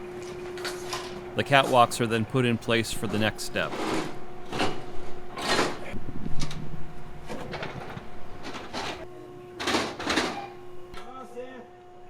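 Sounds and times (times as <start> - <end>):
steady hum: 1.2 - 9.5.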